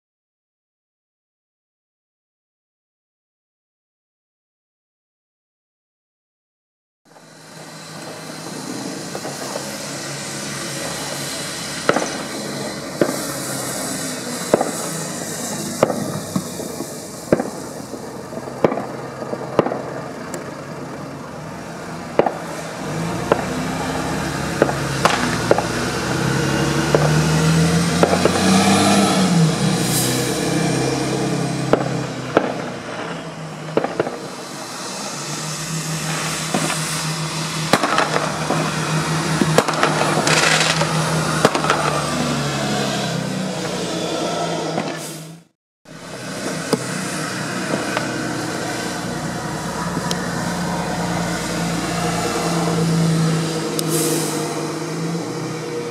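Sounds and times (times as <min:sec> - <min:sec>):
fireworks cracking and banging: 0:07.1 - 0:27.2, 0:27.9 - 0:28.8, 0:31.5 - 0:43.0, 0:44.7 - 0:45.2, 0:46.0 - 0:50.5
bus engine labouring uphill: 0:07.1 - 0:55.9
traffic noise: 0:07.1 - 0:55.9.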